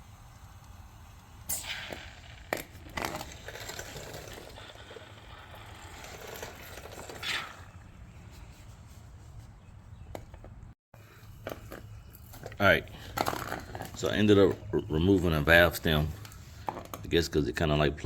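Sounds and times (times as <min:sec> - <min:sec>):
aerosol can hissing and sputtering: 0:00.0 - 0:07.8.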